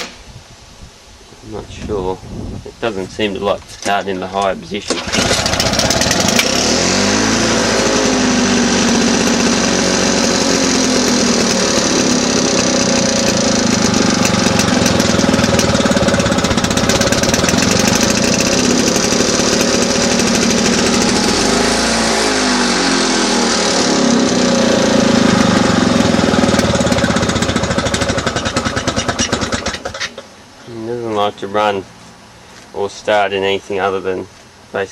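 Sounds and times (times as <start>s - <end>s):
lawn mower engine running: 4.9s - 30.3s.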